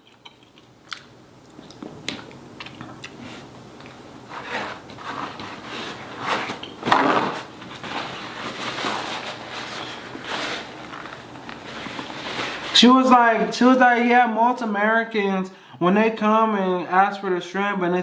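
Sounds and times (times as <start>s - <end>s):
chewing and biting: 0.0s - 4.0s
food handling clicks and crackles: 0.0s - 4.0s
crunching and rustling: 0.0s - 14.1s.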